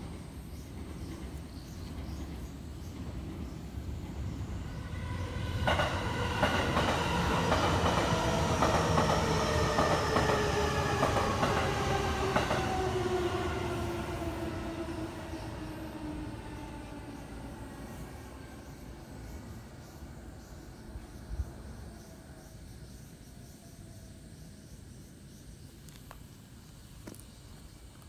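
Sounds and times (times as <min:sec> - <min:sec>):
train rumble: 0:00.0 - 0:23.3
wheels clacking over rail joints: 0:05.6 - 0:12.7.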